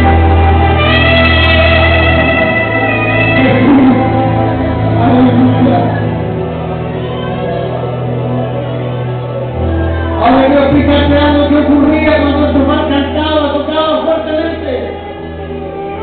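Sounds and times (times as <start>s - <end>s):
person singing: 0.0s - 6.2s.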